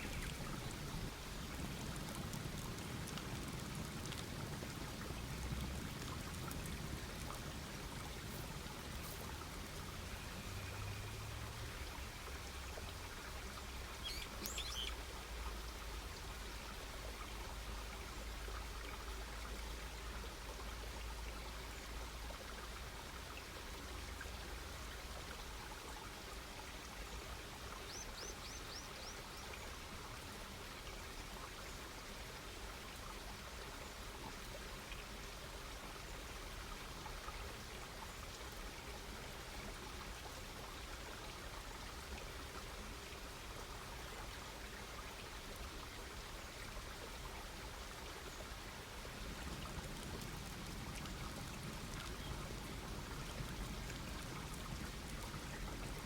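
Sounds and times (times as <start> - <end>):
campfire crackling and hissing: 0.0 - 10.6, 48.6 - 56.0
bird calling: 14.0 - 15.0.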